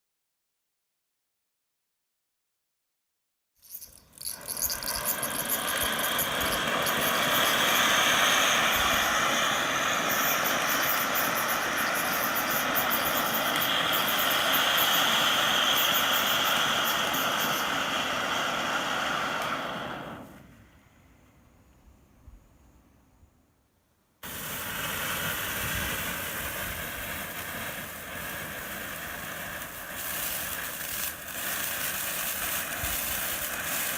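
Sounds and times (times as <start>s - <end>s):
firework sputtering: 3.6s - 20.8s, 24.2s - 33.9s
firework sparks hissing and crackling: 3.6s - 20.9s, 24.2s - 33.9s.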